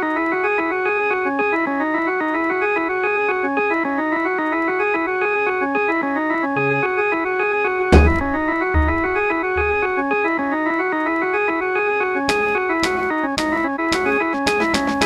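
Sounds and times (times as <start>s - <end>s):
organ-like keyboard fast notes: 6.3s - 7.1s
low bass note: 8.0s - 10.0s.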